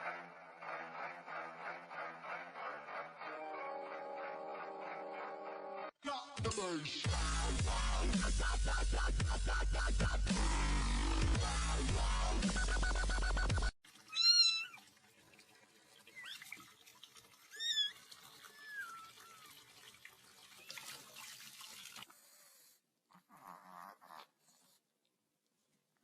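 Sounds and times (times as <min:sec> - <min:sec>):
cat meowing: 0:14.1 - 0:14.8.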